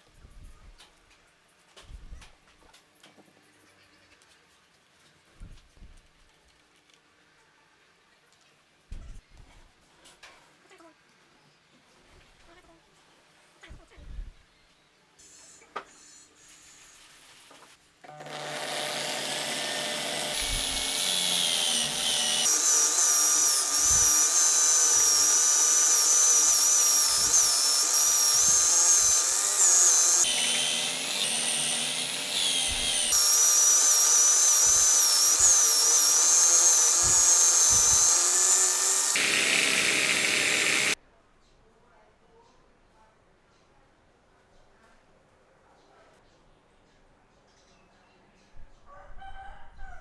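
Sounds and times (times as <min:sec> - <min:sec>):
electric drill high whine: 0:15.2 - 0:16.3, 0:18.1 - 0:41.0.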